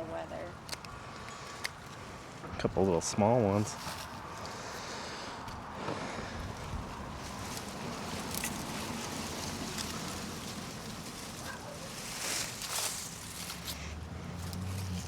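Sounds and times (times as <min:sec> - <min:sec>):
hands and tools digging soil: 0:03.6 - 0:15.0
low motor hum: 0:07.0 - 0:15.0.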